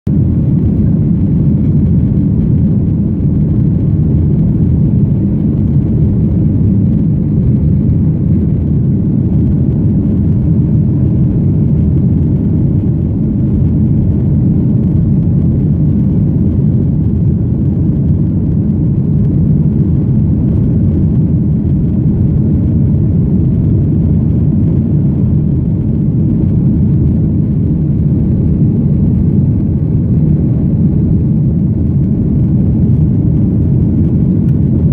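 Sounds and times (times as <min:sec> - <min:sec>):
airplane engines rumbling in cabin: 0:00.1 - 0:34.9.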